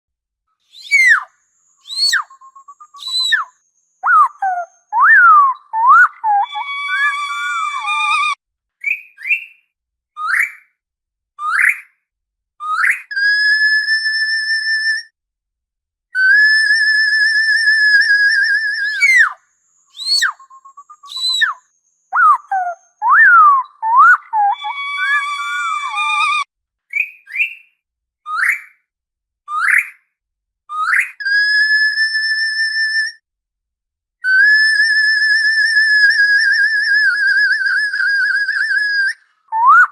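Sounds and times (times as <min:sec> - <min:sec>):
orca whistles: 0:00.8 - 0:08.4, 0:16.2 - 0:21.6, 0:22.2 - 0:26.4, 0:34.2 - 0:39.9.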